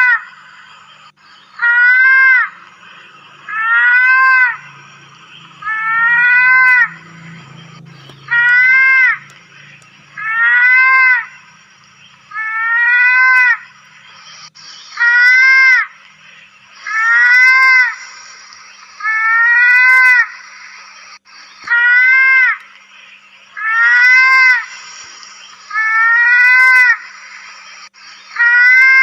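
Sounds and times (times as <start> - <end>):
high-pitched animal call: 1.4 - 9.4, 10.0 - 11.5, 12.3 - 16.0, 16.8 - 18.1, 18.9 - 20.4, 21.3 - 22.7, 23.5 - 24.8, 25.7 - 27.2, 28.0 - 29.0.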